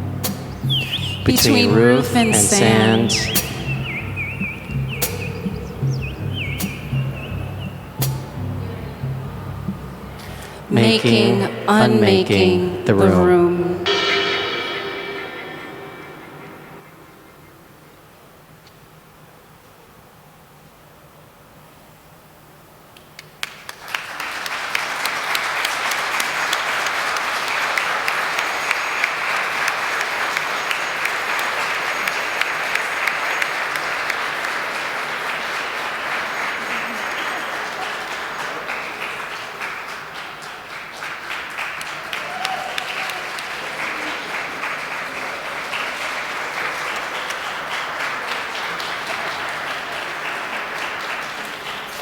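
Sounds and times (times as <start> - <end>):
audience applauding: 0.0 - 12.5, 23.2 - 52.0.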